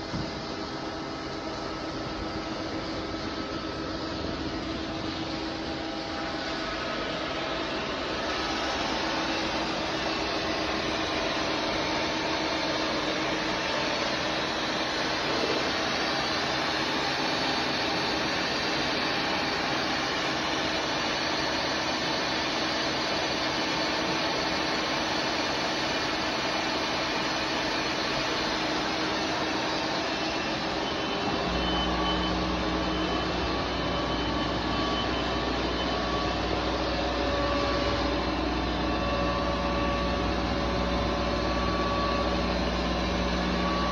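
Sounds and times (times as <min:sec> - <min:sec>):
machining centre mechanical whirr: 0:00.0 - 0:43.9.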